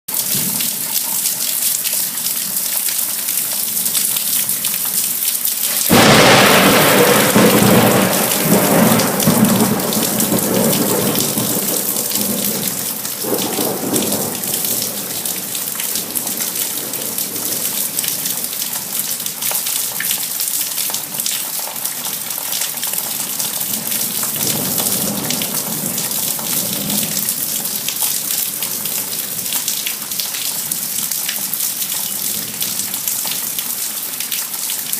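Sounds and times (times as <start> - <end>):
steady rain: 0.1 - 34.9
distant rolls of thunder: 5.9 - 18.2
thunderclap rumbling: 5.9 - 18.3.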